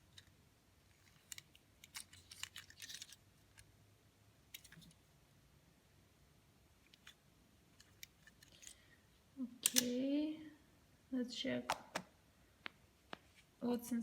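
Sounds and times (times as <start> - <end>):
toy and packaging clicks and taps: 11.7 - 13.2.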